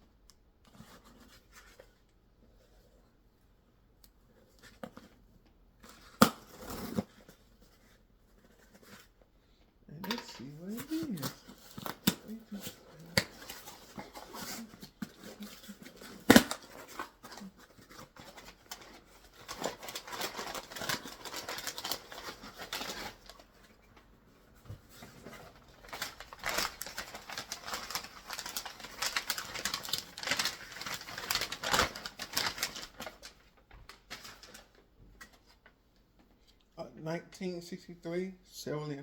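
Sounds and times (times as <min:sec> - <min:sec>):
packaging rustling and tearing: 0:10.4 - 0:23.8, 0:24.8 - 0:35.6.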